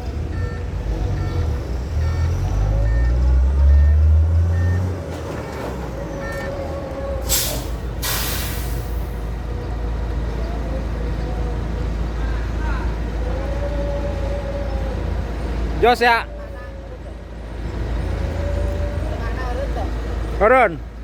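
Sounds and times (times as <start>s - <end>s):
truck diesel engine revving: 0.0s - 16.0s
reversing alarm beeping: 0.2s - 5.0s, 6.2s - 8.9s
air brakes hissing: 7.2s - 9.3s.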